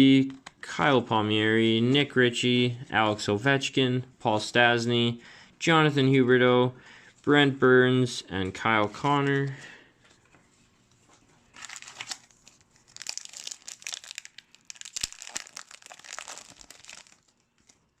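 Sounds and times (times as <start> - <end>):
card pack wrapper tearing and crinkling: 11.5 - 18.0.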